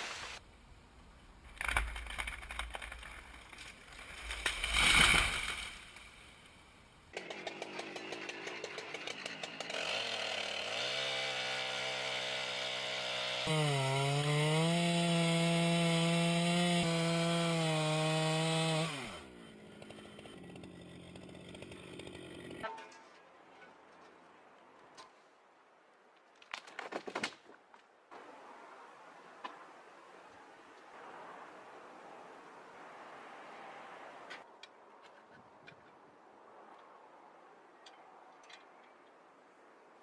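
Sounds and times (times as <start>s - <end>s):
power saw cutting wood: 7.2s - 22.7s.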